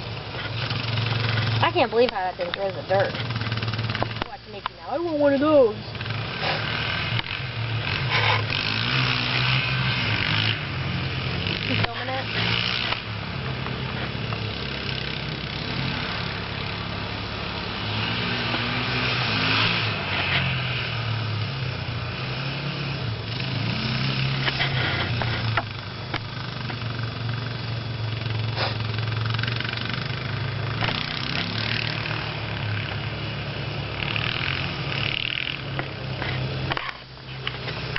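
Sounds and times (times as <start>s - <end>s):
continuous hiss: 0.0s - 37.9s
engine running under load: 0.0s - 37.9s.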